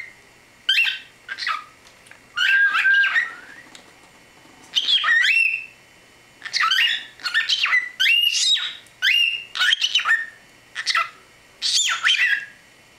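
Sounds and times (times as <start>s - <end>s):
cockatiel chattering and whistling: 0.7s - 1.8s, 2.4s - 3.6s, 4.7s - 5.8s, 6.4s - 12.6s.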